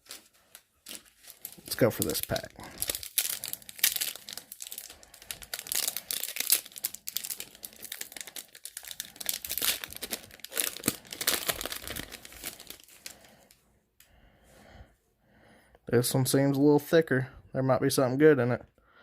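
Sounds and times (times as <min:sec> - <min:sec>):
plastic wrapper crinkling and tearing: 0:00.0 - 0:13.5.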